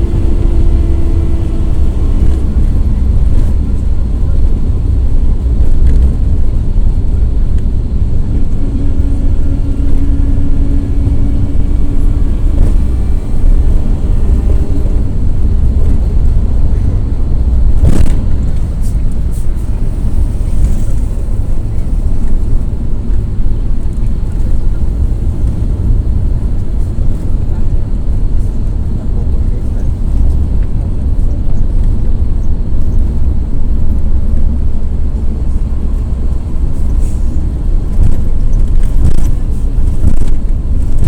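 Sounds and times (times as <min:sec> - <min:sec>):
steady whine: 0:00.0 - 0:29.9
diesel engine running: 0:00.0 - 0:41.0
low road rumble: 0:00.0 - 0:41.0.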